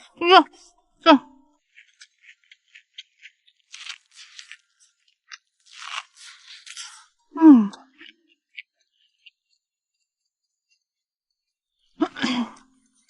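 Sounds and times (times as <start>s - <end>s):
crunching bites of corn: 1.7s - 8.1s.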